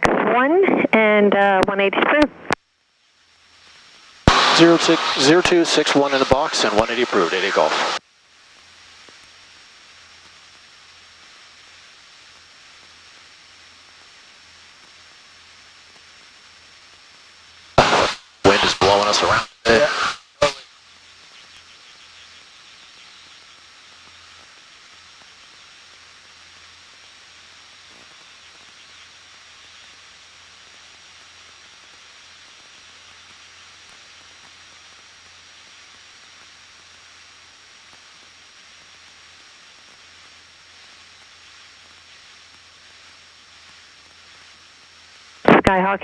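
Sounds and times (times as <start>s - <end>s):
headset intercom hiss: 0.0s - 2.6s, 3.8s - 8.0s, 15.9s - 46.0s
aircraft engine and propeller drone: 4.3s - 8.0s.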